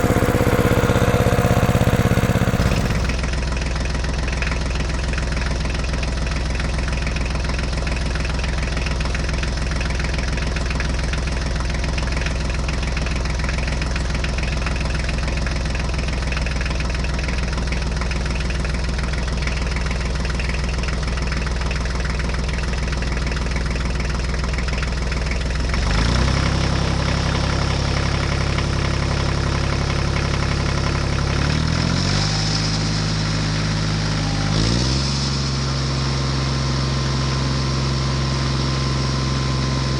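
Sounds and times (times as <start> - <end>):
tractor engine idling: 0.0 - 31.8.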